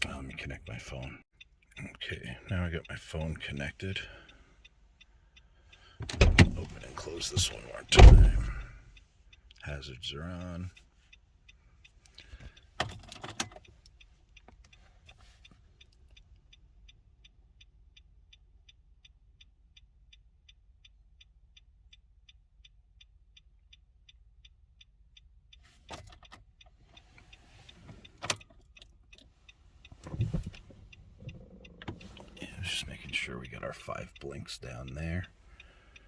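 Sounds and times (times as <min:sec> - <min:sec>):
clunks: 0:06.0 - 0:08.9, 0:29.9 - 0:32.8.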